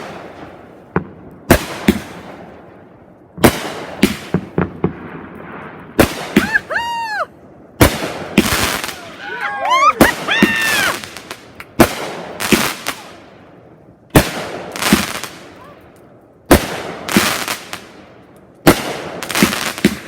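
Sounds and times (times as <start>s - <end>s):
whistling fireworks: 0.0s - 0.8s, 3.4s - 13.4s, 14.1s - 15.8s, 18.6s - 20.0s
fireworks bangs: 0.0s - 13.4s, 14.1s - 15.8s, 16.5s - 20.0s.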